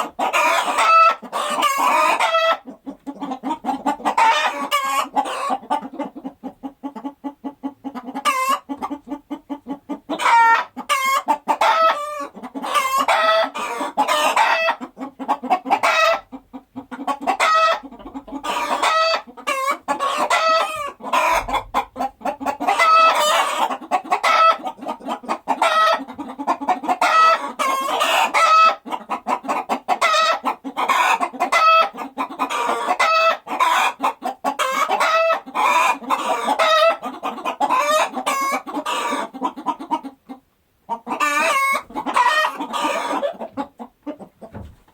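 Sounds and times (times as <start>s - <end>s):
chickens clucking: 0.0s - 44.9s.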